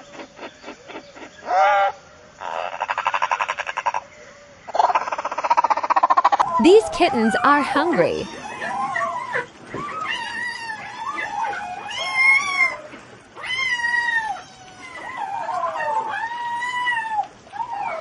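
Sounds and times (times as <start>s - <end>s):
kittens meowing: 6.4s - 17.7s.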